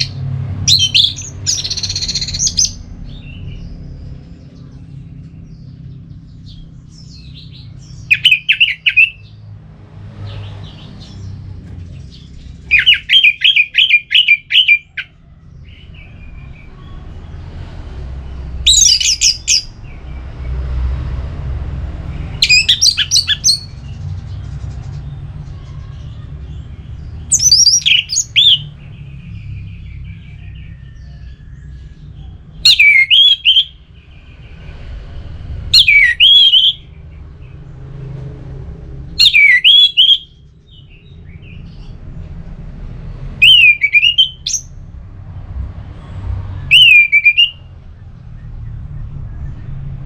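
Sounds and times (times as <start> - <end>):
thrush singing whistled phrases: 0.0 - 2.8, 7.5 - 9.2, 12.7 - 15.1, 18.6 - 19.8, 22.4 - 23.8, 27.3 - 28.7, 32.6 - 33.9, 35.7 - 36.9, 39.2 - 40.4, 43.4 - 44.7, 46.6 - 47.7.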